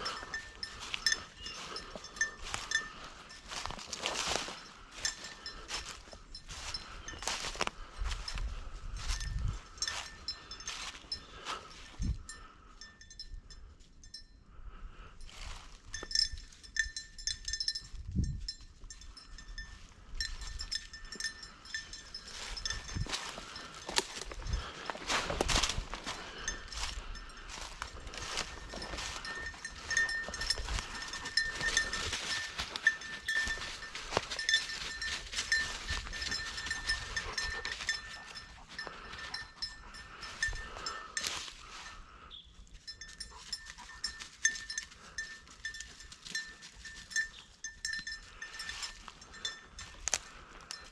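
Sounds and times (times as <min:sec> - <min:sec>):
rustle through brush: 0:00.0 - 0:12.1, 0:20.6 - 0:42.0
dog collar bell jingling: 0:00.0 - 0:14.4, 0:15.2 - 0:50.9.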